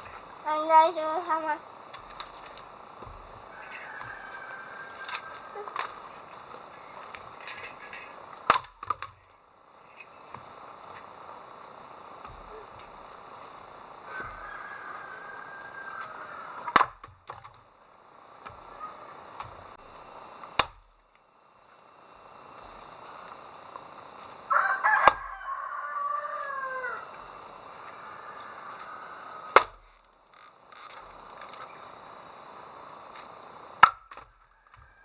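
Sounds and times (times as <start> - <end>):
insects droning: 0.0 - 35.0
rooster crowing: 2.8 - 8.3, 13.5 - 17.0, 18.6 - 19.4, 24.3 - 29.8, 34.3 - 35.0.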